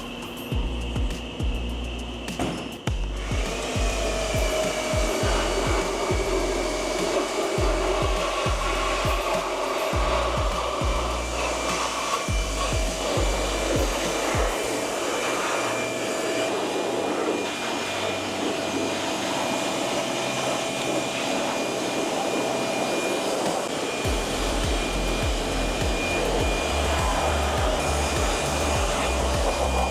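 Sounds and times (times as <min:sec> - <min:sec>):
spray jet hissing: 0:00.0 - 0:29.9.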